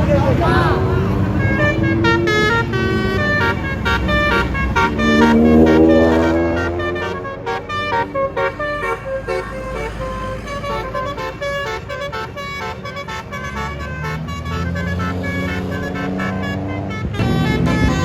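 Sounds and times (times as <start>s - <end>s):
bus engine running: 0.0s - 18.0s
bus horn playing a tune: 0.0s - 18.0s
deep sustained tone: 0.5s - 3.0s.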